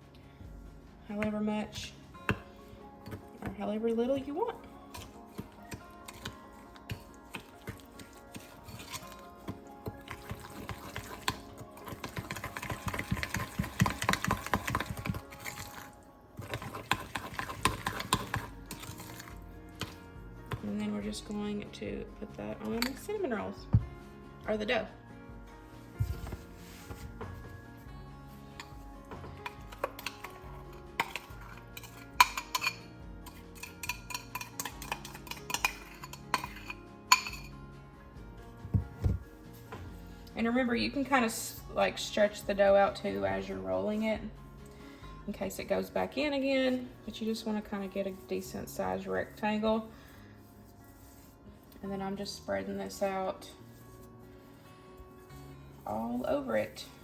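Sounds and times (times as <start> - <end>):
utensil scraping a bowl: 4.8 - 20.8, 28.5 - 37.7, 45.5 - 57.0
utensil clinking against bowl: 28.6 - 37.6.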